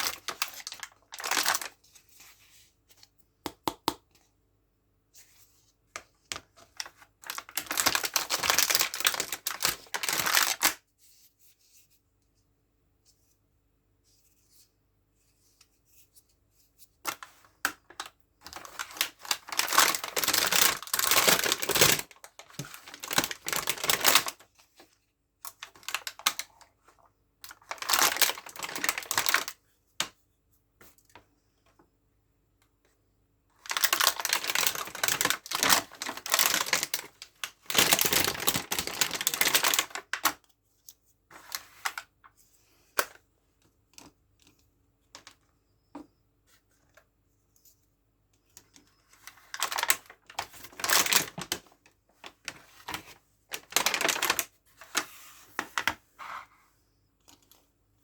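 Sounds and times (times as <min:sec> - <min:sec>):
packaging rustling: 0:00.0 - 0:01.8, 0:06.6 - 0:10.8, 0:17.9 - 0:24.5, 0:27.5 - 0:29.5, 0:33.6 - 0:40.3, 0:48.7 - 0:56.0.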